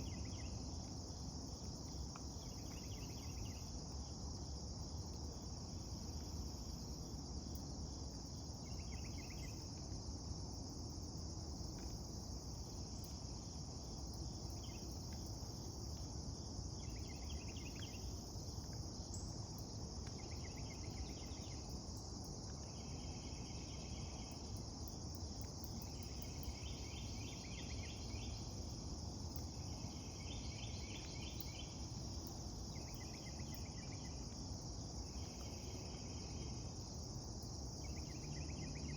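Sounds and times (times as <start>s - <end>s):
insects droning: 0.0s - 38.9s
insect pulsed trill: 2.4s - 3.7s, 22.7s - 38.9s.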